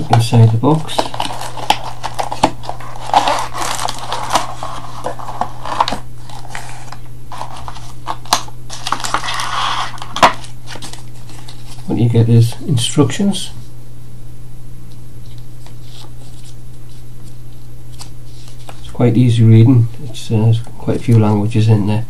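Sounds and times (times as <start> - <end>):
packaging being handled: 0.0 - 12.6.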